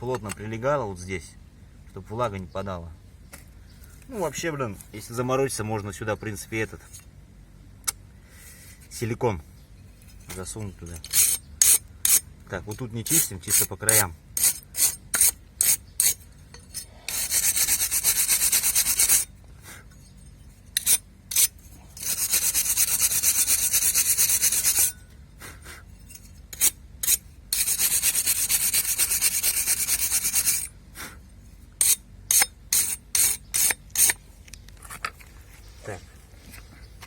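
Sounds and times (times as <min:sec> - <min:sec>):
brush scrubbing metal housing: 0:13.1 - 0:19.3, 0:20.0 - 0:25.0, 0:26.0 - 0:30.7.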